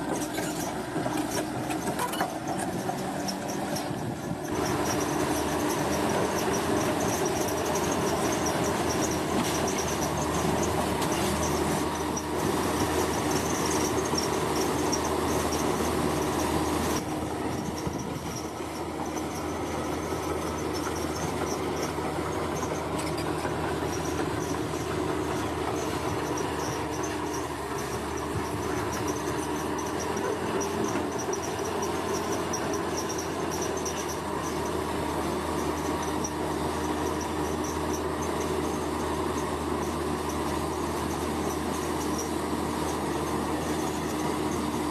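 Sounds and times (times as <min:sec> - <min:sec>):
heavy diesel machinery running: 0:00.0 - 0:44.9.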